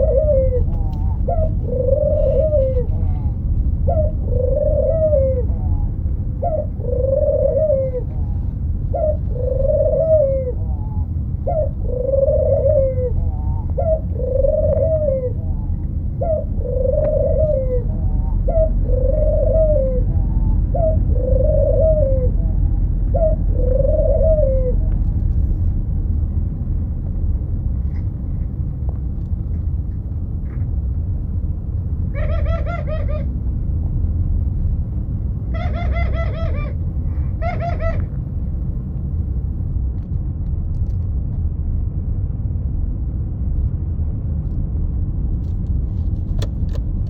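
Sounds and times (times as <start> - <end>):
dove cooing: 0.0 - 25.3, 32.1 - 33.4, 35.4 - 38.2
low rumble: 0.0 - 47.0.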